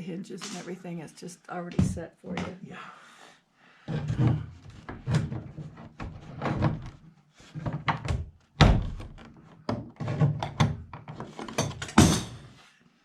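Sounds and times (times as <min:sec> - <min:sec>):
knocks and thuds on door: 0:07.9 - 0:09.2.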